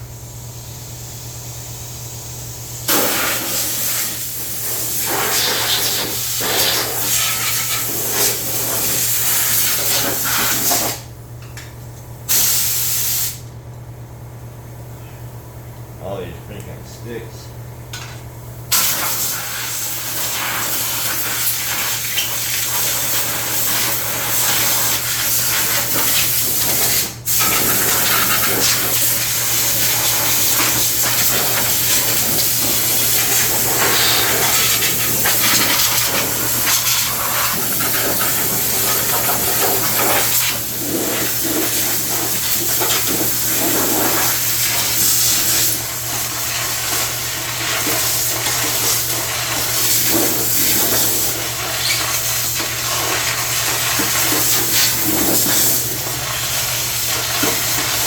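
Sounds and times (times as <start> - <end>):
high-pressure water jet hissing: 2.9 - 11.0, 18.7 - 58.0
constant low hum: 6.8 - 19.2.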